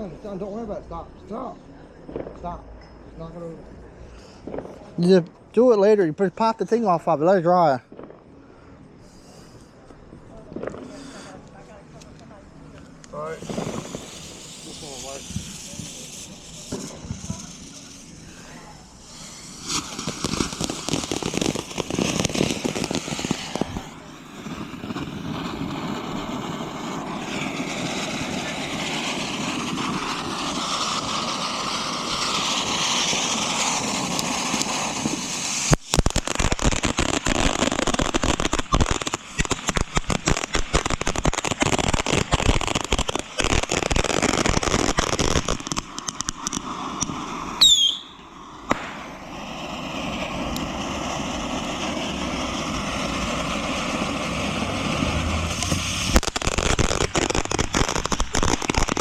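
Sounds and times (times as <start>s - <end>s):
fireworks crackling and popping: 0.0s - 59.0s
fireworks hissing spray: 3.2s - 59.0s
falling whistle: 47.6s - 48.2s.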